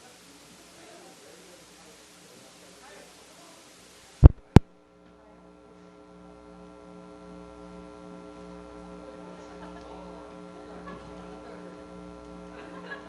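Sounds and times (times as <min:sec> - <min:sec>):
loud low thumps: 0:04.2 - 0:04.6
droning hum of held tones: 0:04.2 - 0:13.0.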